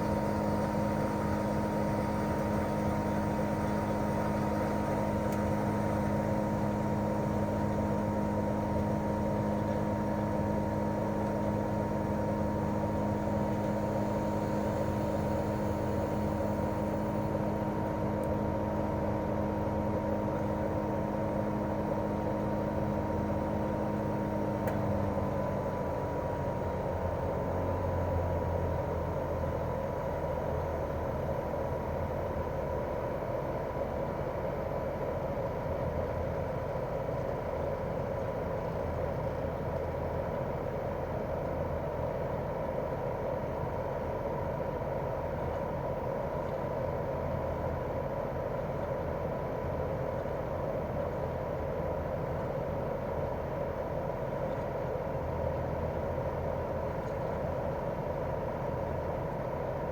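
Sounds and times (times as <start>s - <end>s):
compressor humming: 0.0s - 35.4s.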